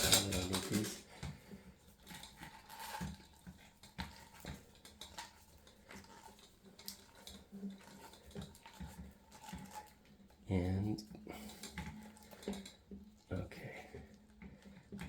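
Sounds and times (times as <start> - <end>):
plastic hose parts clicking: 0.0 - 1.3.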